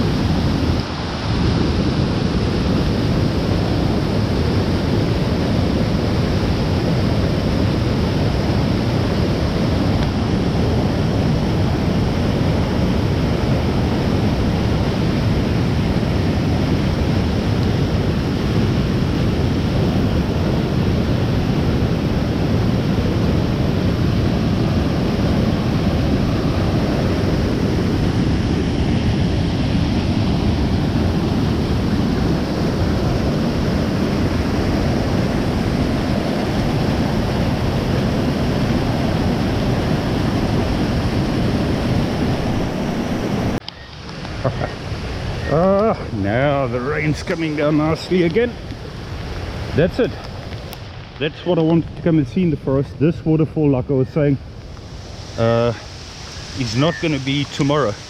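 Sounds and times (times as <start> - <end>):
waterfall rushing loudly: 0.0 - 52.5, 54.5 - 58.0.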